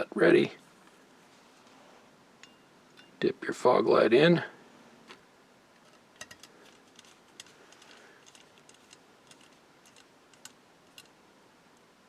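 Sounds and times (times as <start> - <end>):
small plastic clicks: 5.8 - 11.2.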